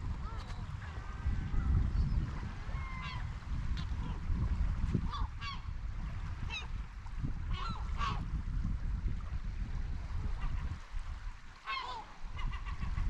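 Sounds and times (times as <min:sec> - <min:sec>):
gulls calling: 0:02.7 - 0:04.2, 0:11.6 - 0:13.0.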